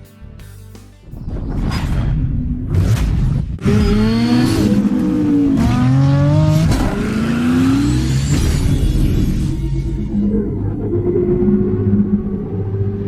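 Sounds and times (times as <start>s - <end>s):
vehicle engine revving: 3.6s - 10.2s.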